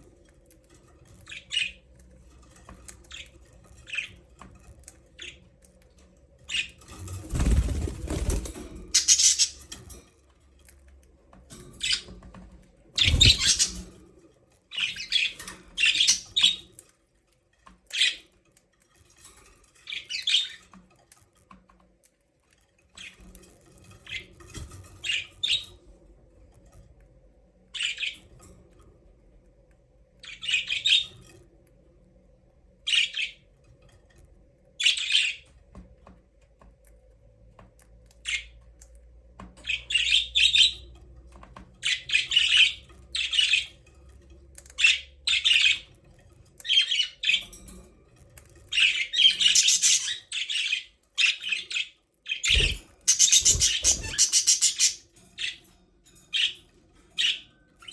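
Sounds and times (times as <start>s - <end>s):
budgerigars chirping and squawking: 1.2s - 1.8s, 8.9s - 9.8s, 13.0s - 14.0s, 14.7s - 16.8s, 30.2s - 31.2s, 34.8s - 35.5s, 39.6s - 40.9s, 41.8s - 43.8s, 44.8s - 45.9s, 48.7s - 55.6s, 56.3s - 57.9s.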